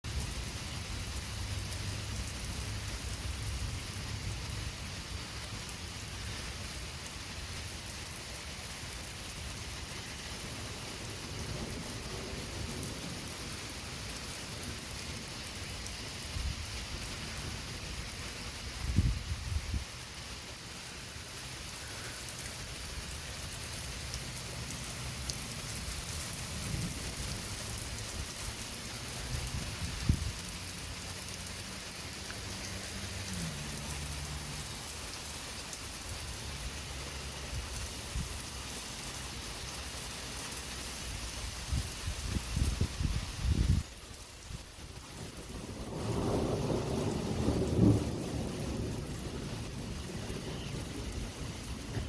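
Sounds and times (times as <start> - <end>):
heavy rain pouring: 0.0 - 52.0
low thunder rumbles: 21.8 - 30.5, 44.9 - 52.0.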